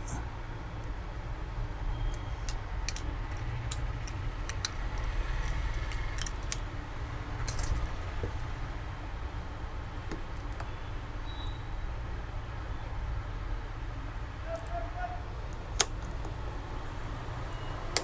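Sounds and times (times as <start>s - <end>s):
steady low hum: 0.0s - 17.6s
small tools clicking and clinking: 2.1s - 6.6s, 7.4s - 7.9s.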